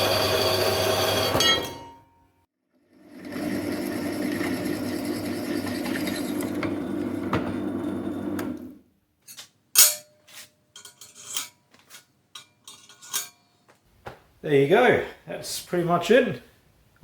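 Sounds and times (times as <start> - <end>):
power tool running: 0.0 - 1.4, 3.0 - 8.6
metal clinks and knocks: 9.2 - 13.5.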